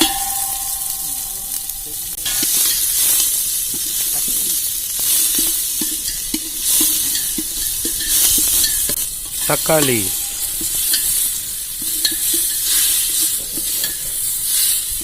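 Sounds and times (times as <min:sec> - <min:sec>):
spoon knocking against pan: 0:00.0 - 0:02.0
onion sizzling in oil: 0:00.0 - 0:15.0.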